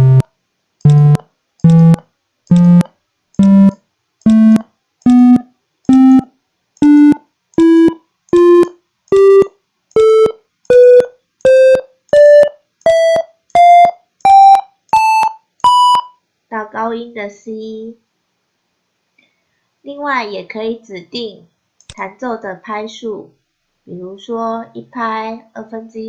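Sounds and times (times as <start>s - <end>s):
electronic beep tones: 0.0s - 0.2s, 0.9s - 16.1s.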